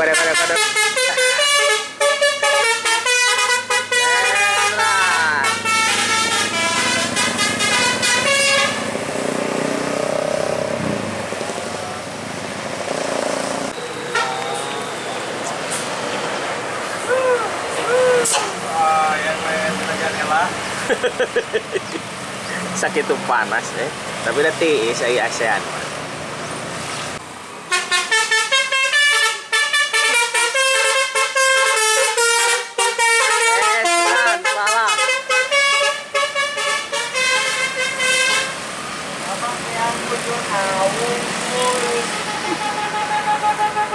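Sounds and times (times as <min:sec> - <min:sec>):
multi-tone air horn melody: 0:00.0 - 0:08.9, 0:13.7 - 0:15.5, 0:27.7 - 0:38.6, 0:41.5 - 0:43.9
bus engine and road noise: 0:00.0 - 0:43.9.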